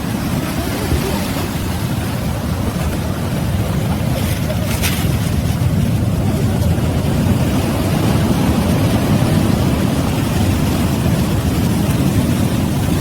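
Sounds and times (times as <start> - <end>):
water and ice rushing: 0.0 - 13.0.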